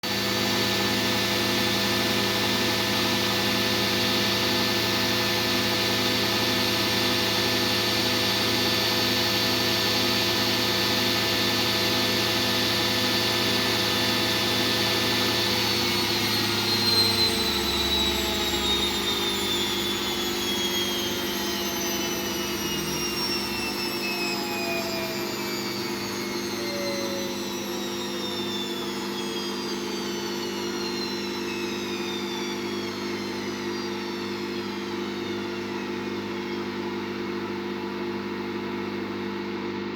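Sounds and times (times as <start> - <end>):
washing machine spinning with whine: 0.0 - 39.9.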